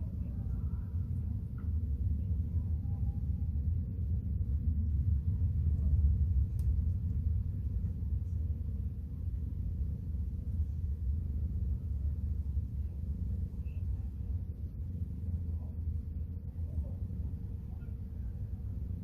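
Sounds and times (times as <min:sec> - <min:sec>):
steady low rumble: 0:00.0 - 0:19.0
faint click: 0:06.5 - 0:06.8.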